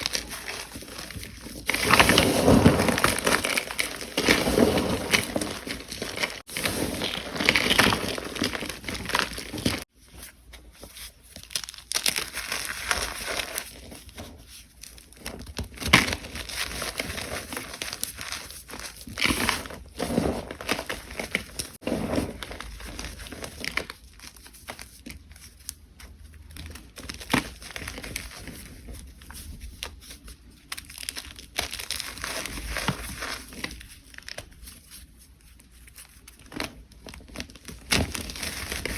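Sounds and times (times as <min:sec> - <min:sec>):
chalk crunching and crumbling: 0:00.0 - 0:25.7.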